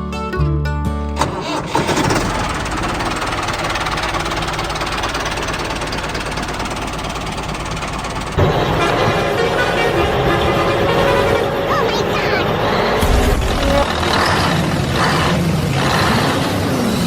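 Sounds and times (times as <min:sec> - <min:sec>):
small motor rattling: 0:01.3 - 0:10.2, 0:12.6 - 0:17.0.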